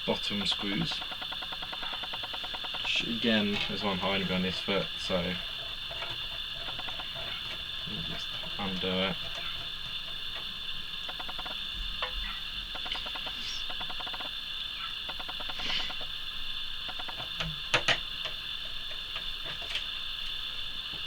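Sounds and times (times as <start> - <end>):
high-pitched background hiss: 0.0 - 21.0
screwdriver ticking: 0.3 - 4.1, 5.9 - 7.6, 11.1 - 11.6, 12.8 - 14.3
sharp clicks: 0.3 - 4.2, 10.4 - 14.4, 15.0 - 16.1, 16.9 - 18.4.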